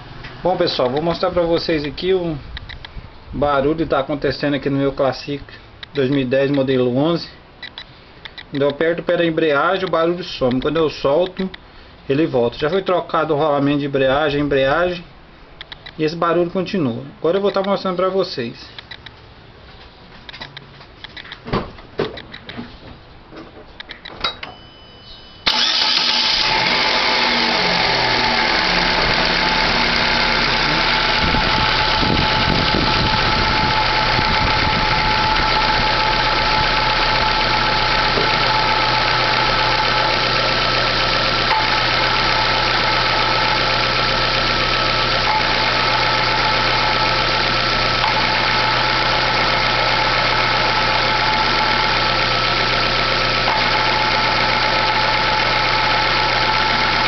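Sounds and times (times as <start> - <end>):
high clutch whine: 25.0 - 57.0
car engine starting and idling: 25.4 - 57.0.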